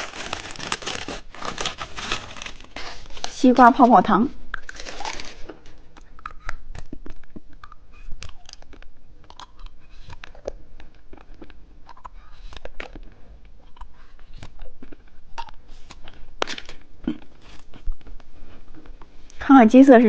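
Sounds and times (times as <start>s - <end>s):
gum chewing mouth clicks: 5.9s - 16.3s.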